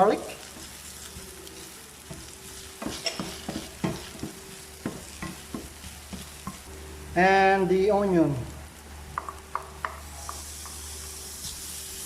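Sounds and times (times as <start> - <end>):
garlic sizzling in butter: 0.0 - 12.0
utensil scraping a pan: 2.1 - 4.4.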